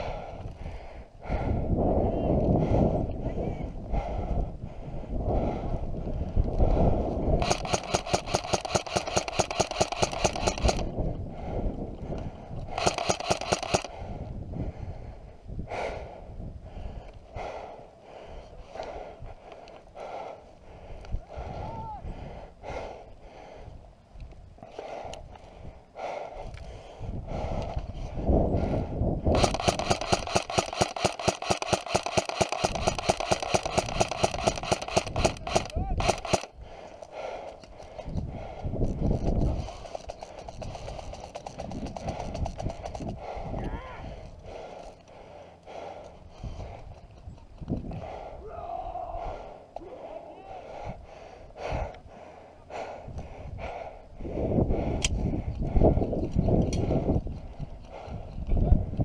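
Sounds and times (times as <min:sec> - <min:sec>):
airsoft gun bursts: 0:07.4 - 0:10.9, 0:12.6 - 0:14.0, 0:29.3 - 0:36.6, 0:39.6 - 0:43.2.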